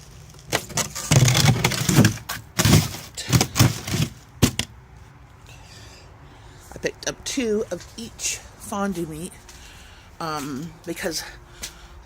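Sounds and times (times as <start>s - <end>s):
frozen packs knocking: 0.4s - 4.7s.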